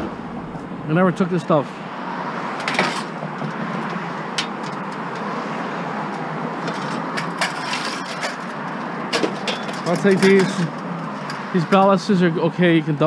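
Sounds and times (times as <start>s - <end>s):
motor vehicle noise: 0.0s - 13.0s
sharp clicks and knocks: 2.6s - 5.4s.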